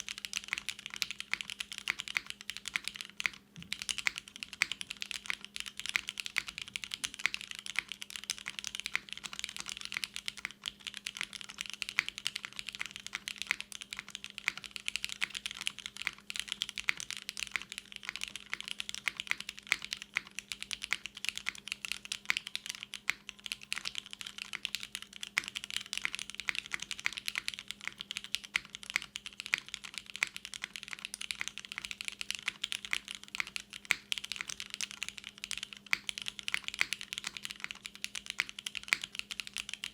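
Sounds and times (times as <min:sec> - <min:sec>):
faint steady hum: 0:00.0 - 0:39.9
fast mechanical keyboard typing: 0:00.0 - 0:39.9.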